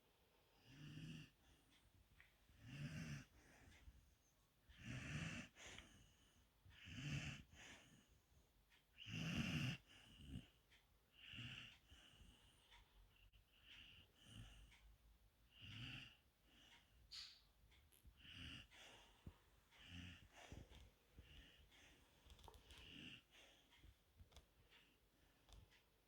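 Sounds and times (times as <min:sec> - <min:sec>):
puppy snoring: 0:00.6 - 0:01.6, 0:02.2 - 0:04.0, 0:04.7 - 0:08.3, 0:08.9 - 0:14.9, 0:15.5 - 0:16.7, 0:18.0 - 0:23.6.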